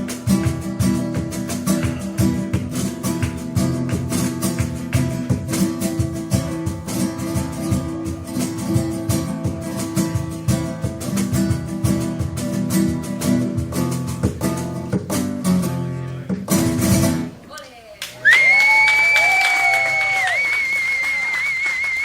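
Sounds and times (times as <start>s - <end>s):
acoustic guitar strumming: 0.0s - 17.4s
cajon: 0.0s - 22.0s.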